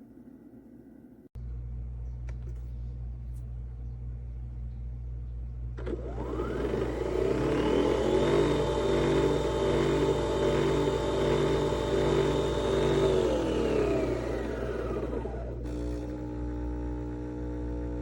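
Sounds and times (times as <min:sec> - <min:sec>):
coffee machine whine: 0:05.6 - 0:18.0.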